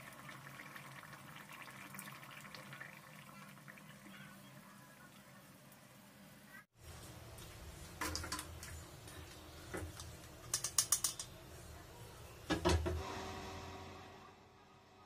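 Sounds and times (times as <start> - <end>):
kitchen utensils clinking: 9.8 - 11.5.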